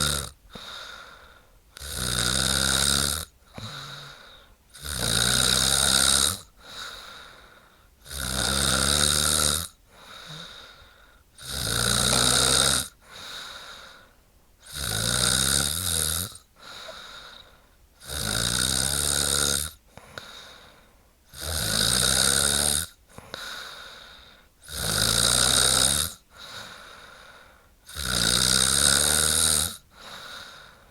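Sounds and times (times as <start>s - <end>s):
woman snoring loudly: 0.0s - 0.4s, 1.8s - 6.5s, 8.0s - 10.7s, 11.4s - 13.4s, 14.6s - 17.0s, 18.0s - 19.8s, 21.3s - 23.0s, 24.6s - 26.8s, 27.9s - 30.6s.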